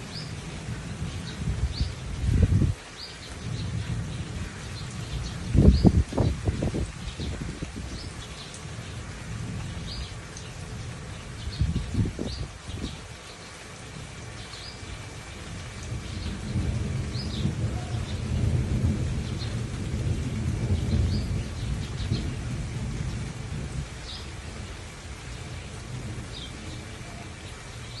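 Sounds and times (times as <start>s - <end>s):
steady rain: 0.0s - 28.0s
thunder rumbling: 0.9s - 2.8s, 15.4s - 28.0s.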